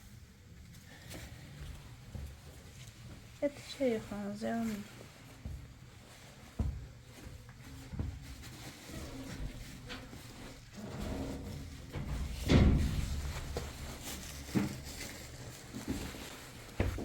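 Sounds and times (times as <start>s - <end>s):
knocks and bumps: 10.4s - 15.0s
heavy thump: 11.9s - 14.8s.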